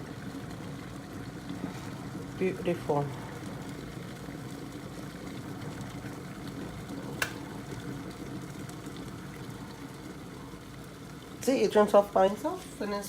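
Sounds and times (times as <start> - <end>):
kettle water boiling: 0.0 - 13.0
kettle switch click: 7.2 - 7.4.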